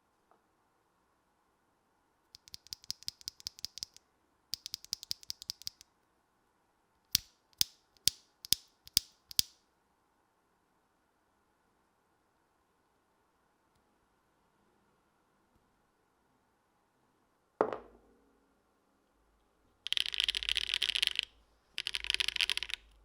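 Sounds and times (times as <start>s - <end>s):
mechanical keyboard typing: 2.4s - 4.0s, 4.6s - 5.8s, 19.9s - 23.0s.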